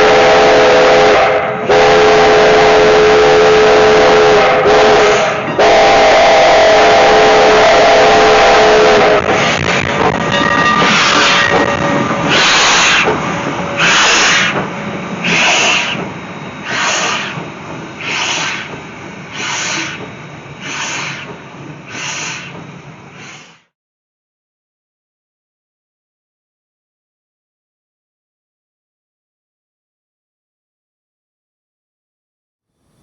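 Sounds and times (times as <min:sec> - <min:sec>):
steam locomotive whistle chord: 0:00.0 - 0:21.2
steam engine exhaust chuffing: 0:00.0 - 0:23.7.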